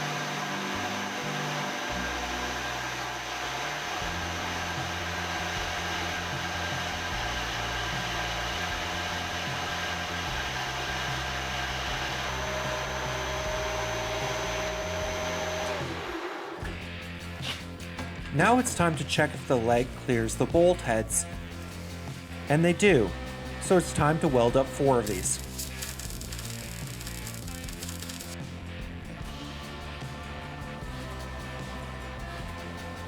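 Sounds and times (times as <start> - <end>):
milling machine motor whine: 0.0 - 16.8, 23.6 - 28.4.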